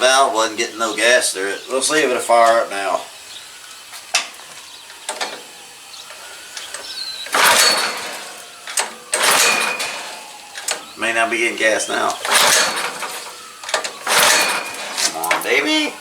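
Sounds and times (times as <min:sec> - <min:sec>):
recoil starter rope whirring: 0:05.0 - 0:16.0.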